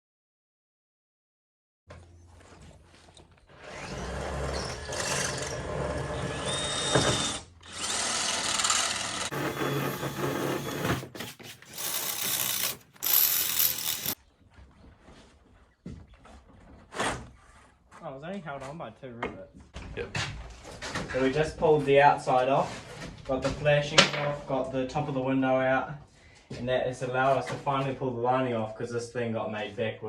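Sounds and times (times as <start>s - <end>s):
power drill drilling rivets: 3.5s - 14.2s.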